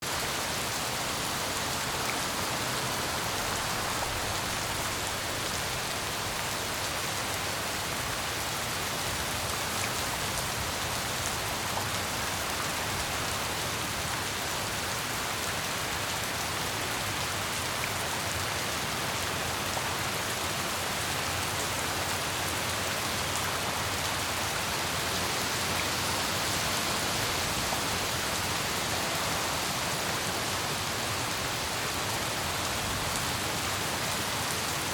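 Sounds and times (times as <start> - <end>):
heavy rain pattering: 0.0 - 14.8.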